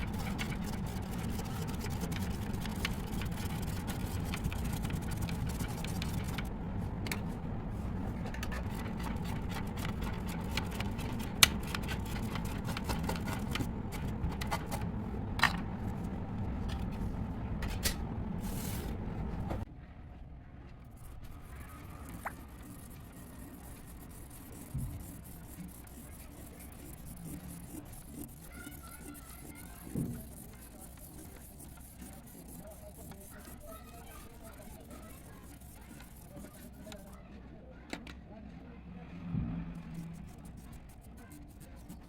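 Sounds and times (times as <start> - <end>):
pen scratching on paper: 0.0 - 6.5, 8.4 - 14.7, 21.0 - 37.2, 39.8 - 42.0.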